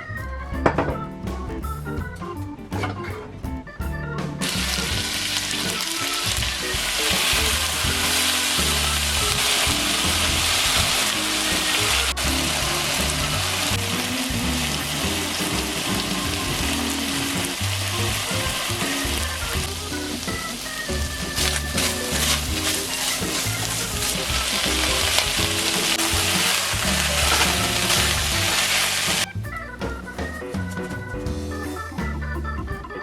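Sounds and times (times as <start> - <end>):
background music: 0.0 - 33.0
food sizzling in frying pan: 4.4 - 19.2, 21.4 - 29.3.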